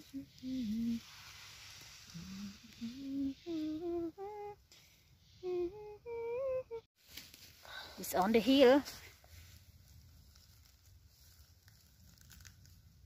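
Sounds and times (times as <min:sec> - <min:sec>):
person humming a tune: 0:00.0 - 0:01.2, 0:02.1 - 0:04.6, 0:05.3 - 0:06.9.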